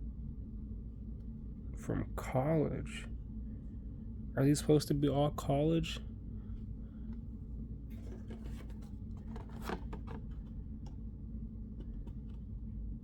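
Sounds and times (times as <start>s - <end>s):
low steady hum: 0.0s - 13.0s
cards rustling and flicking: 7.9s - 11.0s, 11.8s - 12.4s.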